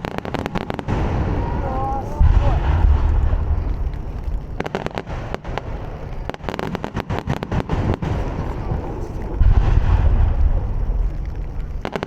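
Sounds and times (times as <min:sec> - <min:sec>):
firework bursts booming: 0:00.0 - 0:12.0
fireworks crackling: 0:00.0 - 0:12.0
low rumble: 0:00.0 - 0:12.0.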